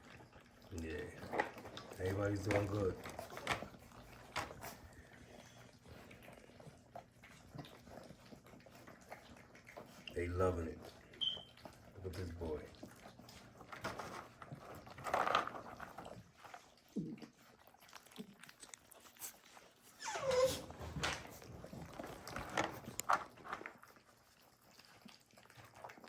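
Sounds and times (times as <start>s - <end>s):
puppies whining and yelping: 10.8s - 12.0s, 19.3s - 21.0s.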